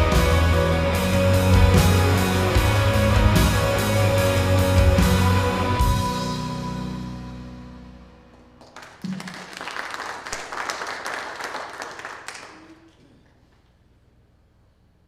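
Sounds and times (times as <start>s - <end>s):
band chord ringing out: 0.0s - 8.3s
audience applauding: 8.3s - 13.5s.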